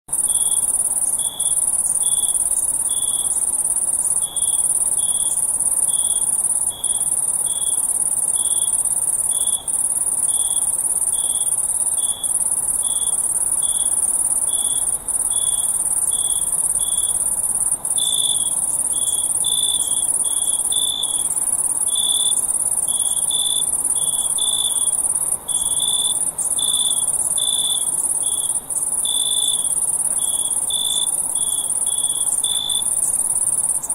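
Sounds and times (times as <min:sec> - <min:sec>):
cricket chirps: 0:00.1 - 0:33.9
crickets trilling: 0:00.1 - 0:33.9.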